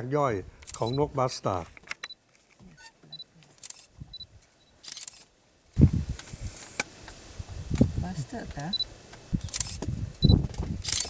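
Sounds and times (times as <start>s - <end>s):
camera autofocus beeps: 0.7s - 1.1s, 2.8s - 5.2s, 9.5s - 11.0s
camera shutter clicks: 3.6s - 3.9s, 4.8s - 5.3s, 9.4s - 9.8s.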